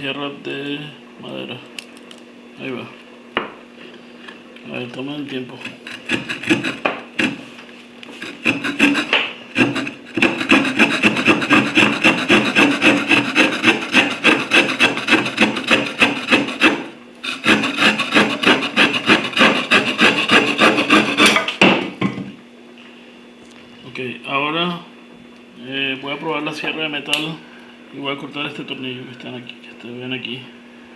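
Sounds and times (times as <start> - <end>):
saw blade rasping through wood: 5.6 - 7.4, 8.1 - 21.5.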